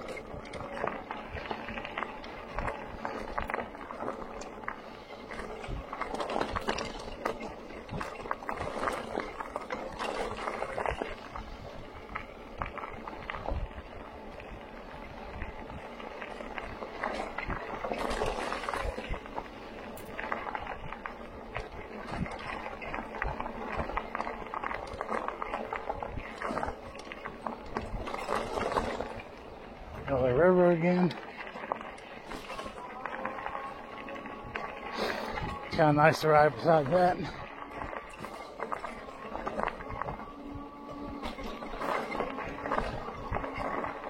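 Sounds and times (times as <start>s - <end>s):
bike tyres rolling on stony trail: 0.0s - 44.0s.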